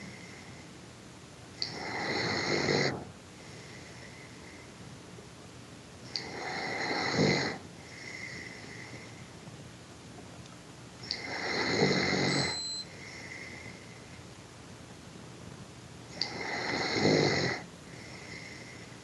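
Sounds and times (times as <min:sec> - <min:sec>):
person snoring: 0:01.6 - 0:03.0, 0:06.2 - 0:08.6, 0:11.1 - 0:12.5, 0:16.2 - 0:18.7
faint high whistle: 0:12.3 - 0:12.9.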